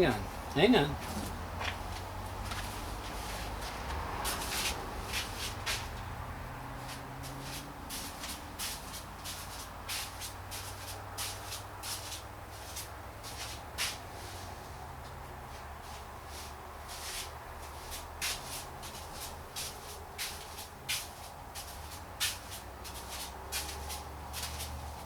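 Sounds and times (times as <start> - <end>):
shuffling and rustling: 0.0 - 6.1, 15.5 - 25.0.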